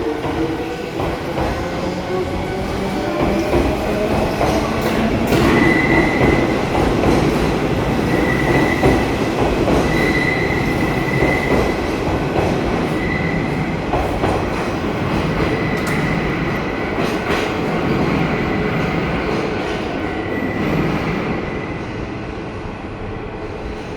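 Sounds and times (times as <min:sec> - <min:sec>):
train running noise: 0:00.0 - 0:23.9
wheels squealing on rails: 0:07.9 - 0:11.9.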